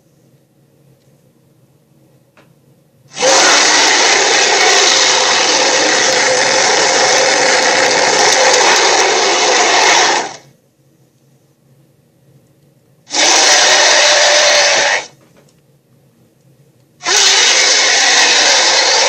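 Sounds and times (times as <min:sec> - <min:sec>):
cartoon monster roars: 0:03.1 - 0:10.4, 0:13.1 - 0:15.1, 0:17.0 - 0:19.0.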